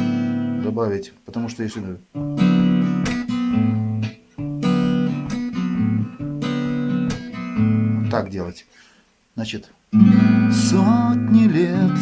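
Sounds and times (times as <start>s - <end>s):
acoustic guitar strumming chords: 0.0s - 0.8s, 2.1s - 8.2s, 9.9s - 12.0s.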